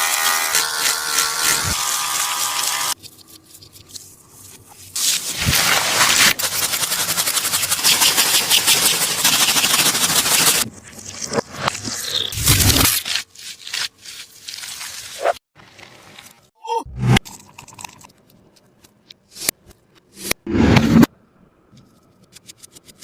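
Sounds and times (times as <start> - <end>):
paper and tape crinkling: 12.4 - 16.5.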